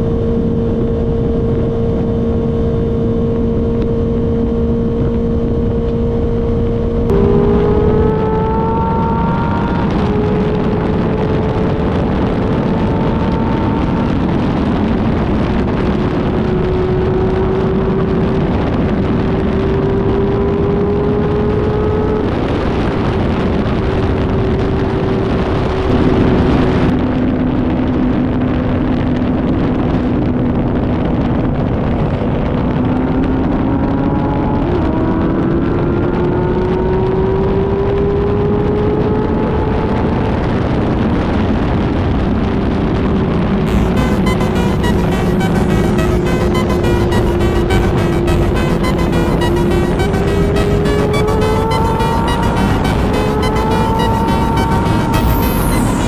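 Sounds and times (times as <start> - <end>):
motorcycle engine: 0.0 - 18.4, 43.7 - 56.0
wind noise: 0.0 - 43.7.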